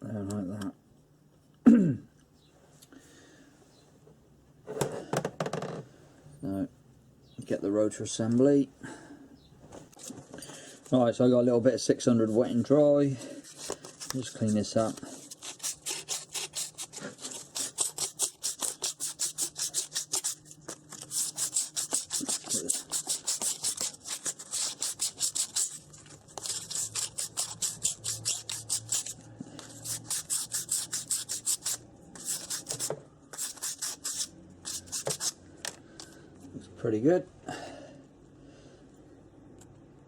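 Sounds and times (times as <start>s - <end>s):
sandpaper rubbing on metal: 14.4s - 35.4s.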